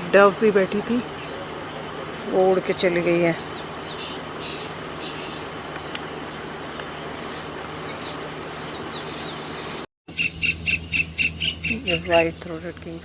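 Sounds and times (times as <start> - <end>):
crickets trilling: 0.0 - 12.6.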